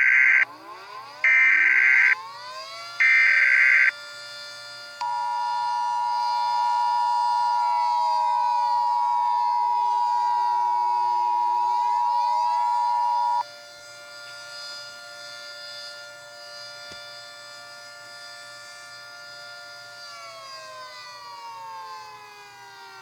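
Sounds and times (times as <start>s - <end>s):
siren wailing: 0.0s - 4.0s, 5.0s - 13.4s.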